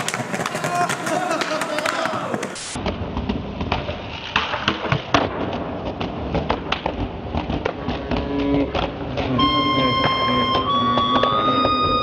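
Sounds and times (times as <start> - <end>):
skateboard wheels rolling: 0.0 - 8.2
skateboard clacks and knocks: 0.0 - 9.4.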